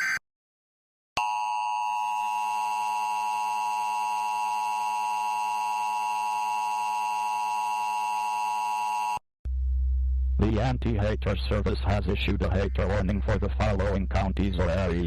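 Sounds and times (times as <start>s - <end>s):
two-tone electronic alarm: 1.2s - 9.2s.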